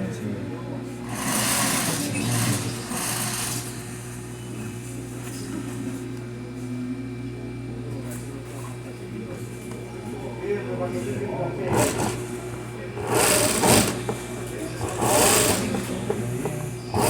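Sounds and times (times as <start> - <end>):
sewing machine stitching: 1.0 - 3.9, 11.7 - 12.3, 13.0 - 14.2, 14.8 - 16.1.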